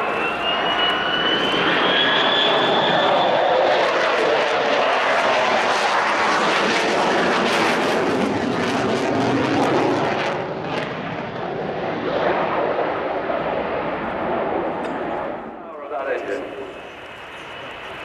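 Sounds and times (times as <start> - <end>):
loud crackling jet noise: 0.0 - 18.0.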